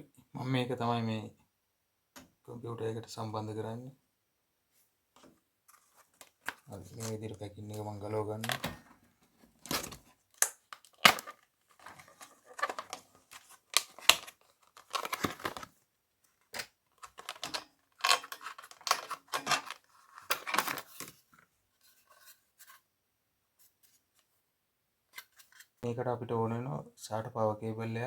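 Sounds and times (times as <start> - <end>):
packaging scraping and tearing: 5.8 - 7.3, 10.7 - 15.7, 17.0 - 21.1.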